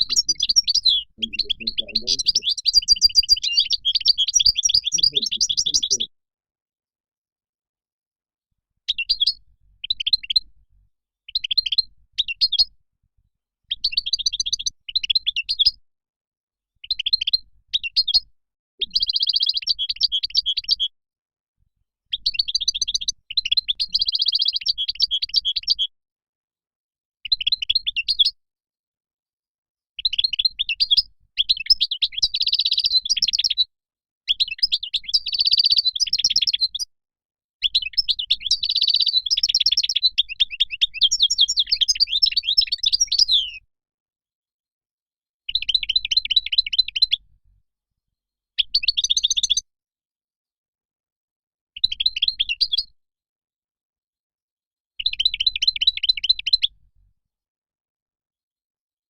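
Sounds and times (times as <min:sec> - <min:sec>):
goldfinch twittering song: 0:00.0 - 0:06.1, 0:13.7 - 0:15.8, 0:18.8 - 0:20.9, 0:22.1 - 0:25.9, 0:30.0 - 0:33.6, 0:34.3 - 0:36.8, 0:37.7 - 0:43.6, 0:45.5 - 0:47.2, 0:48.6 - 0:49.6, 0:55.0 - 0:56.7.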